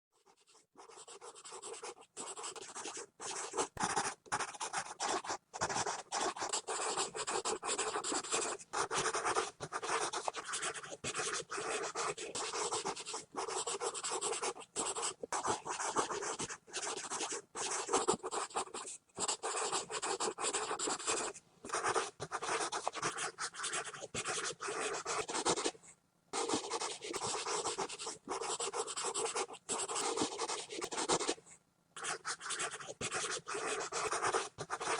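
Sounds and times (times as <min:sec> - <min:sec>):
pencil scribbling on paper: 0:00.2 - 0:25.8, 0:26.4 - 0:31.4, 0:32.0 - 0:34.9.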